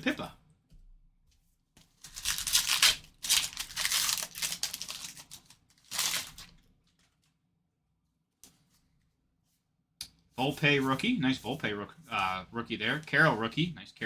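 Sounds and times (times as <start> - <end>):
wrapper tearing and crinkling: 2.0 - 7.0.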